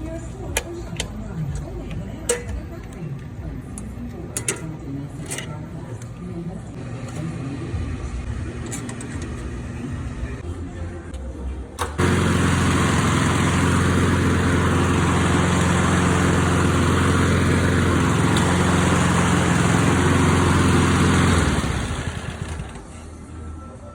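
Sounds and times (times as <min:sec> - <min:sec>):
mower engine running: 0:11.8 - 0:23.0.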